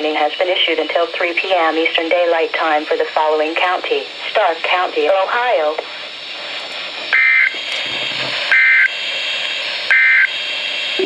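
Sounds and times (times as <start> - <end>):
radio hiss: 0.0 - 11.0
two-tone digital buzzes: 7.1 - 9.0, 9.9 - 11.0.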